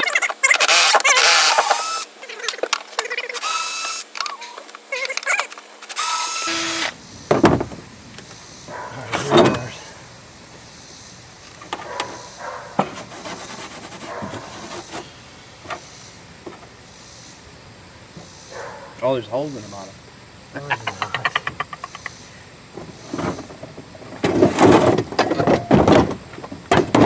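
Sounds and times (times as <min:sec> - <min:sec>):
electric drill running: 0:00.0 - 0:07.0
heavy thumps: 0:07.2 - 0:08.3.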